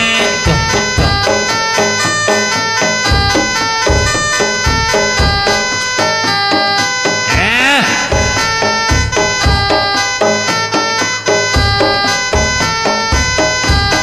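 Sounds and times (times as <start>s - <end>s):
deep drum strokes: 0.0s - 1.6s
reedy wind instrument: 0.0s - 2.2s
ringing gamelan tones: 0.0s - 14.0s.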